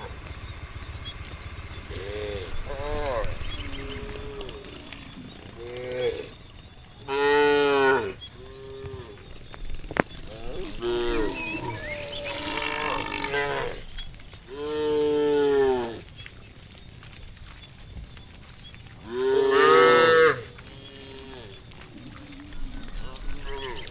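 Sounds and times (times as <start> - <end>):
cattle mooing: 1.8 - 6.4, 7.0 - 9.2, 10.2 - 13.9, 19.1 - 23.9.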